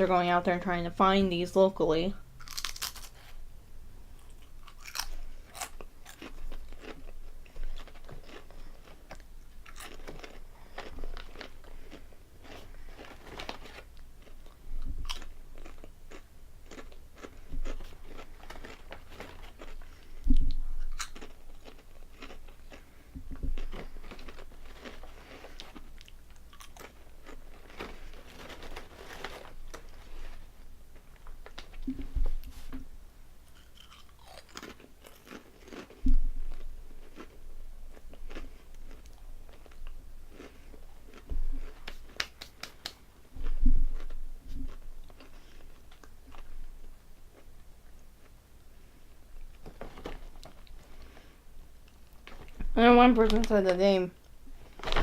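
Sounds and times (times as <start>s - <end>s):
crunching potato chips: 2.4s - 3.4s, 4.1s - 32.1s, 33.5s - 47.5s.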